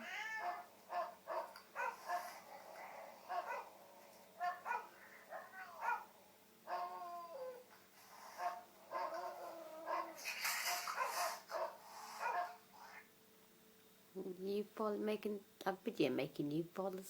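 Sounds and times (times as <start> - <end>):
dogs barking through a speaker: 0.4 - 7.6, 8.2 - 13.0
dog whining: 4.4 - 6.1, 6.7 - 7.7, 8.3 - 13.1.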